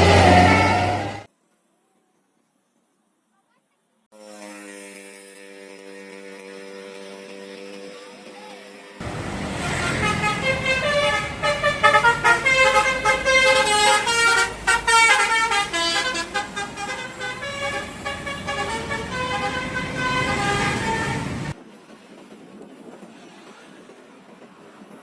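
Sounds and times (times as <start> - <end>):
bus horn playing a melody: 0.0 - 1.3, 9.0 - 21.6.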